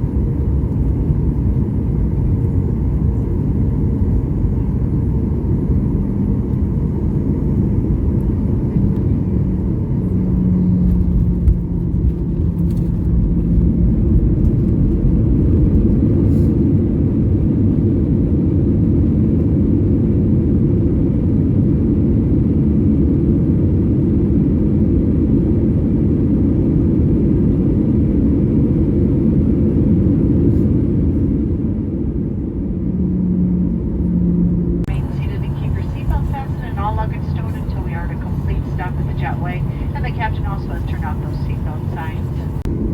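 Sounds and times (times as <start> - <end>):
jet engine rumble inside cabin: 0.0 - 42.9
hum: 32.3 - 42.9.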